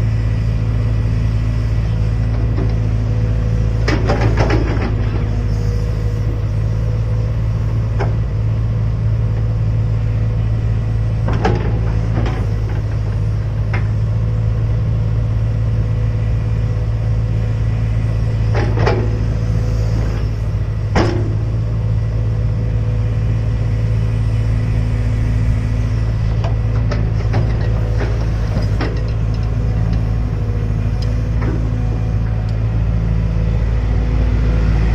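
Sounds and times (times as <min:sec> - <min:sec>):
excavator diesel engine running: 0:00.0 - 0:34.9
metal clanks and knocks: 0:03.8 - 0:05.3, 0:11.3 - 0:14.0, 0:20.9 - 0:21.5, 0:26.3 - 0:30.0.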